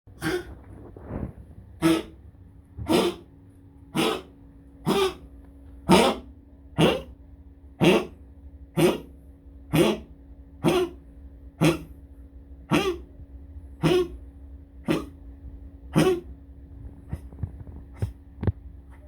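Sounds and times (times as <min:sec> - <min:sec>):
pet coughing: 0:00.2 - 0:00.8, 0:01.8 - 0:02.2, 0:02.8 - 0:03.3, 0:03.9 - 0:07.1, 0:07.8 - 0:11.0, 0:11.6 - 0:12.0, 0:12.7 - 0:13.1, 0:13.8 - 0:14.2, 0:14.8 - 0:15.2, 0:15.9 - 0:16.3.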